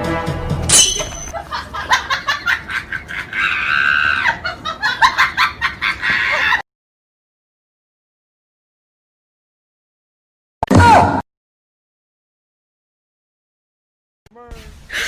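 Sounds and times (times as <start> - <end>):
giggling laughter: 1.3 - 6.6.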